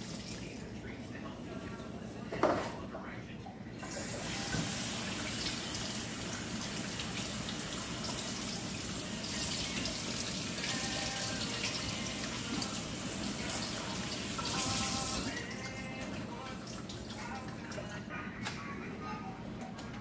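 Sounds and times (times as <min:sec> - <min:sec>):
faucet running into sink: 0:00.0 - 0:00.7, 0:03.8 - 0:18.0.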